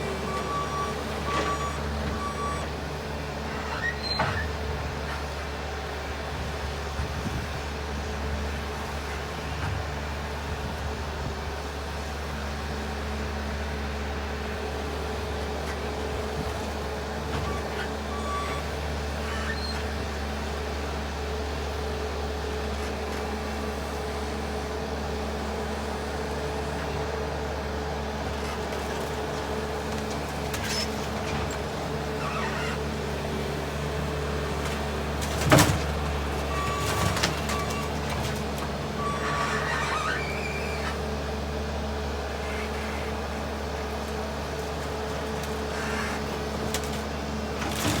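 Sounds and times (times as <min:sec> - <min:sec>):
diesel engine running: 0:00.0 - 0:48.0
boards and metal crunching and rattling: 0:28.3 - 0:41.1, 0:42.4 - 0:48.0.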